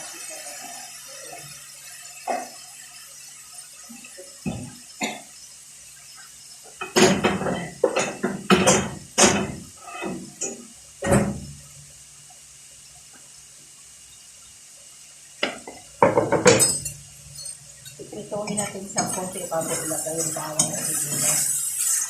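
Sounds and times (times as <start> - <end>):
cookware clattering and water splashing: 6.8 - 11.5, 15.4 - 22.0.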